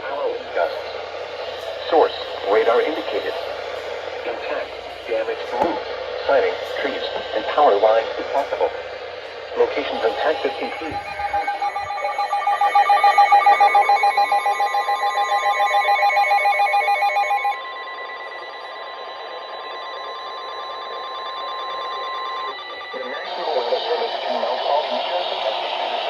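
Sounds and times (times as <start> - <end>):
steady alarm tone: 0.0 - 26.0
warbling electronic alert tone: 9.6 - 23.1.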